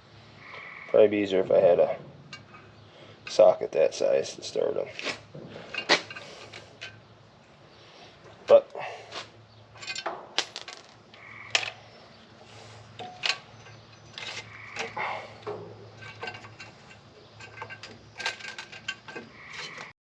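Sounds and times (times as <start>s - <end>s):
low steady hum: 0.0s - 19.9s
metal clinks of tools and bolts: 9.8s - 11.8s, 12.9s - 19.9s.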